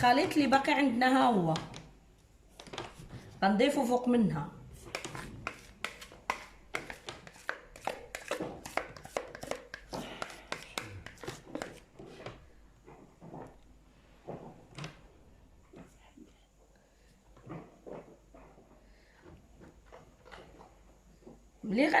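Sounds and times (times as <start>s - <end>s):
utensil scraping and tapping bowl: 4.8s - 12.4s.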